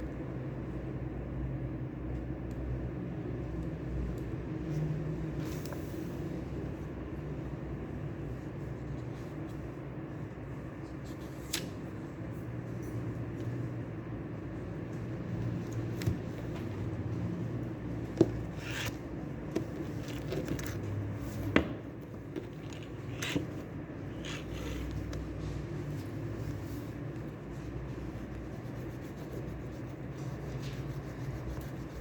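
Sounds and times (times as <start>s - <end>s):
low room ambience rumble: 0.0s - 32.0s.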